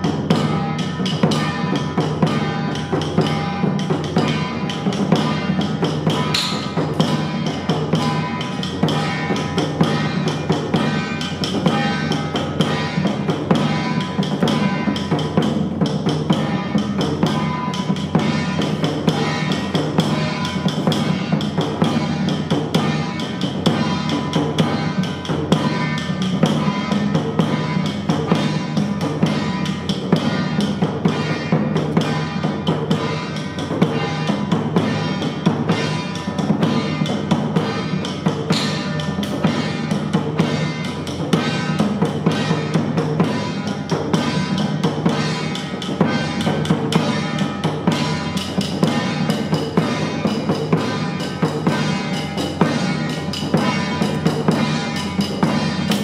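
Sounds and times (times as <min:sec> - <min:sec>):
loud music with drumming: 0:00.0 - 0:56.0.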